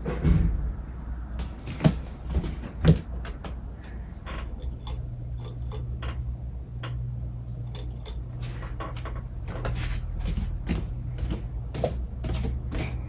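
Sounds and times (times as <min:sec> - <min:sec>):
ceiling fan motor hum: 0:00.0 - 0:13.0.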